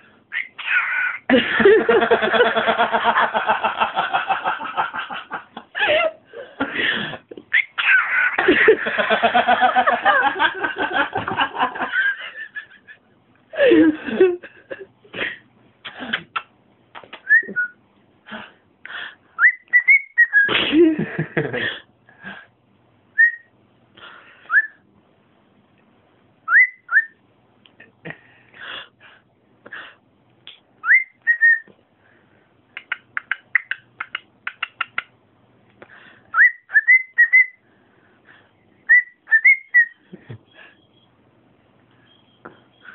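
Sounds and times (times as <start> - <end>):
cockatiel chattering: 0.4 - 1.3, 7.5 - 8.4, 32.8 - 35.1
cockatiel clicks: 32.8 - 35.1.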